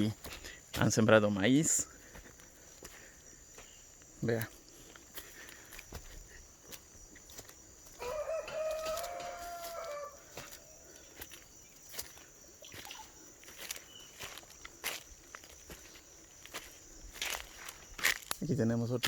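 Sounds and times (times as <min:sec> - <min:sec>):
faint footsteps: 0:00.0 - 0:18.5
rooster crowing: 0:07.9 - 0:10.9.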